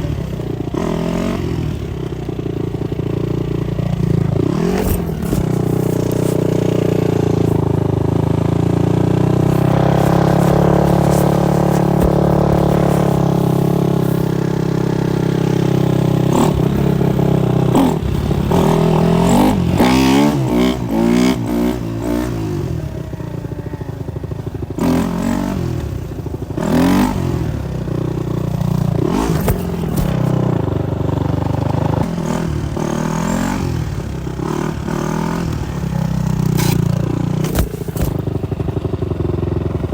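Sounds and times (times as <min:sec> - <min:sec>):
motorcycle engine revving: 0:00.0 - 0:39.9
sharp knocks and clatter: 0:04.5 - 0:06.6, 0:09.3 - 0:14.4, 0:29.1 - 0:30.5.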